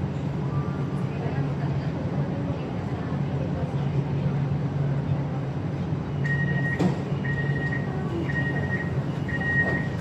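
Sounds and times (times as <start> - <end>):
train low hum: 0.0 - 10.0
high electronic warning beeps: 6.2 - 10.0.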